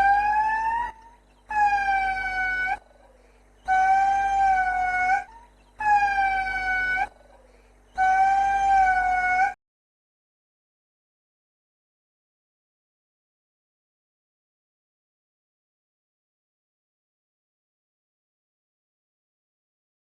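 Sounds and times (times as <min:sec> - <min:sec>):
chimpanzee calling: 0:00.0 - 0:09.6.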